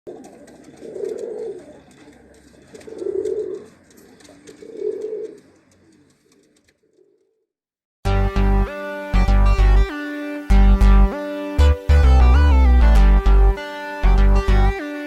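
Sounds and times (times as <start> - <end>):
pigeons cooing: 0.1 - 7.4.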